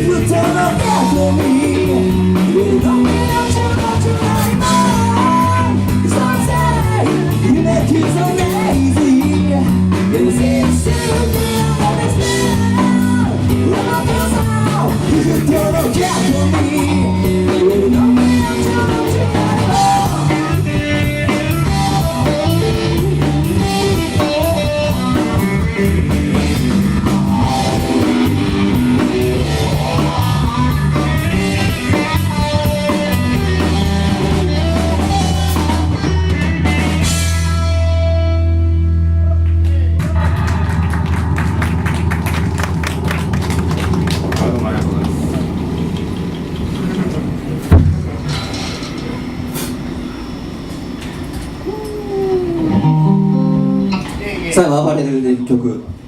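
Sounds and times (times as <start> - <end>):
person singing: 0.0 - 23.4, 51.7 - 54.0
rock band playing live: 0.0 - 50.4, 51.7 - 54.5.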